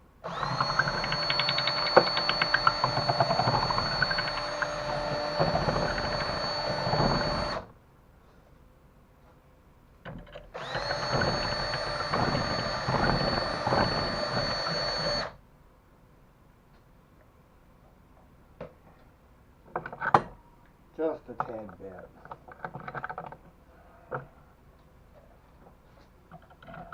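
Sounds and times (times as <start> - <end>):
power tool whining: 0.2 - 7.7, 10.6 - 15.4.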